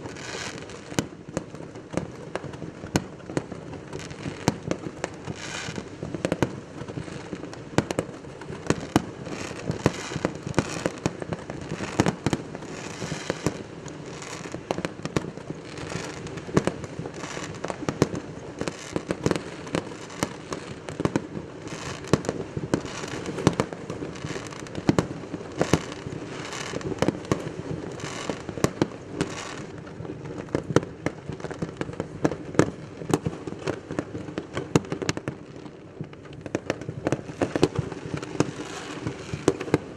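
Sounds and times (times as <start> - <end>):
fireworks bangs: 0.0 - 39.9
fireworks crackling: 0.0 - 39.9.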